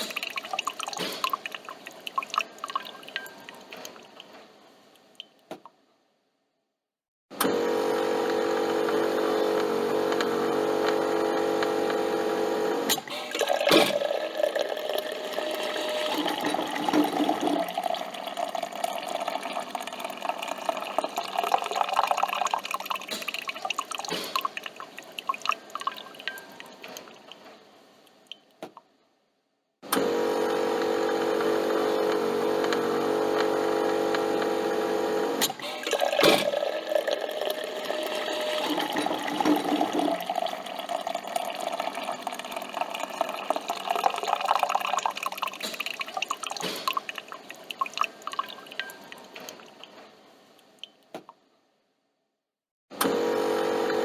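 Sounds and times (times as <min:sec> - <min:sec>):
coffee machine humming: 0:07.4 - 0:23.2, 0:29.9 - 0:49.0, 0:53.0 - 0:54.0.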